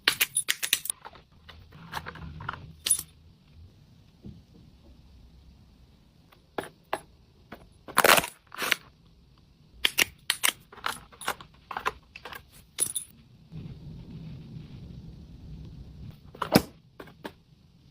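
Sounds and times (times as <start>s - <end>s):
sharp clicks of small items: 0.0s - 3.1s, 9.8s - 13.1s
low hum: 12.8s - 16.4s.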